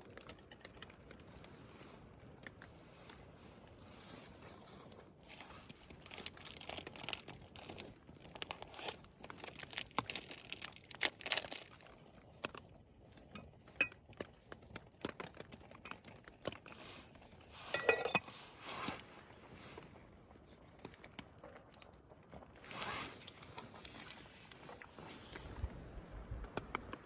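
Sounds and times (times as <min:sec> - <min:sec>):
rustling: 0:01.1 - 0:26.5
utensil scraping metal can: 0:17.6 - 0:19.1.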